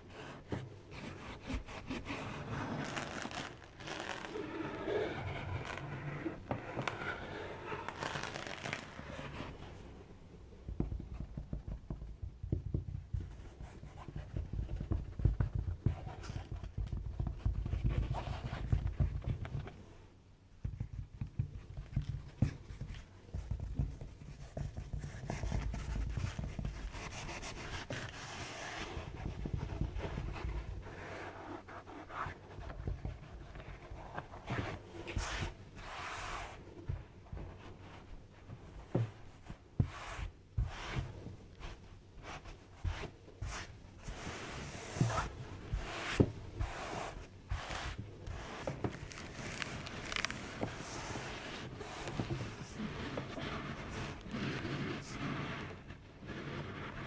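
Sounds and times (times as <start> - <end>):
scratching and crackling: 1.0 - 9.8, 44.8 - 57.0.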